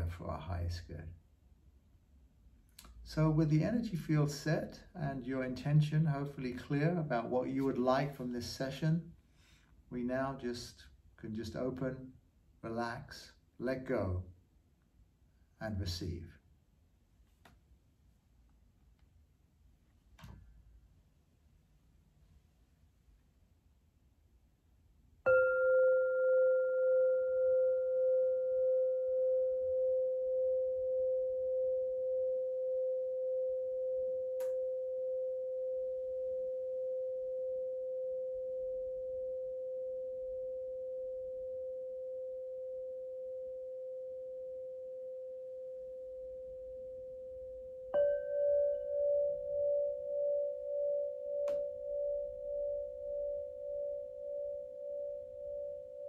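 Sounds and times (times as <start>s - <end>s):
singing bowl ringing: 25.2s - 56.0s
higher-pitched singing bowl ringing: 25.3s - 56.0s.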